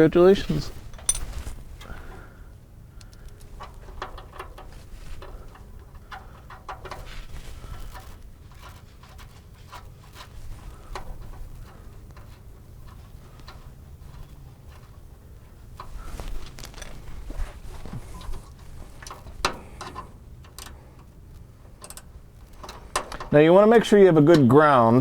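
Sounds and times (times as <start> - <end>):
metallic clicks of bolt tightening: 21.8 - 23.3.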